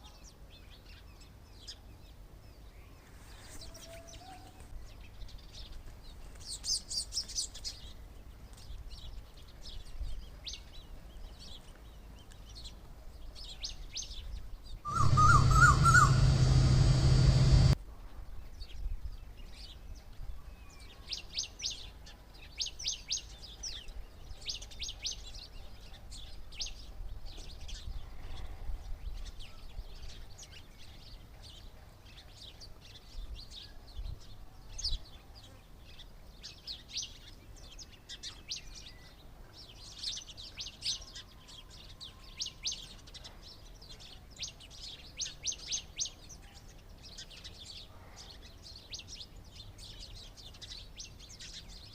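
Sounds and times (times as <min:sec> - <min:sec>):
small birds chirping: 0:00.0 - 0:17.8, 0:18.6 - 0:51.9
low rumble: 0:14.9 - 0:17.8.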